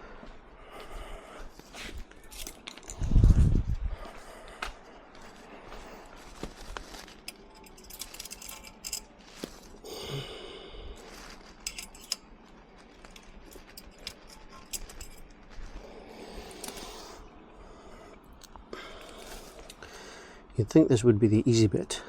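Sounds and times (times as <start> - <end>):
metal parts and hand tools clinking: 2.2 - 3.3, 6.3 - 9.8, 11.1 - 15.8.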